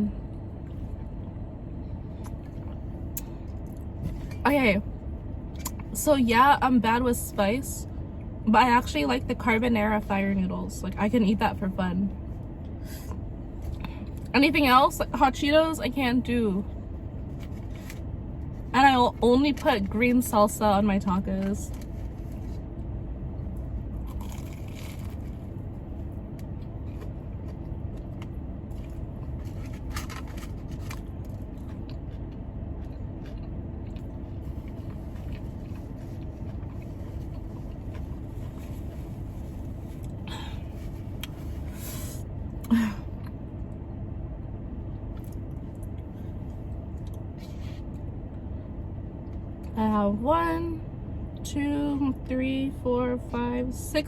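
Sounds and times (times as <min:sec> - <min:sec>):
car air conditioning hum: 0:00.0 - 0:54.0
chewing and eating sounds: 0:02.1 - 0:04.4, 0:21.0 - 0:41.8, 0:45.1 - 0:48.1.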